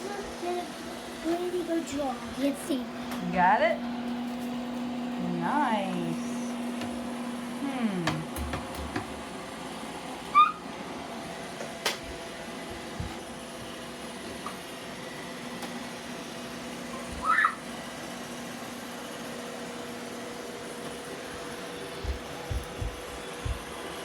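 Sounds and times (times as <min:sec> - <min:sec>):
robot vacuum motor hum: 0:18.0 - 0:24.0.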